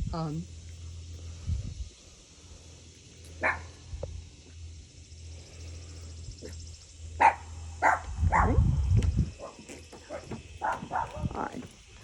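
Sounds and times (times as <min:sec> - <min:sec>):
dog barking: 0:03.4 - 0:03.7, 0:07.2 - 0:08.6, 0:09.4 - 0:11.4.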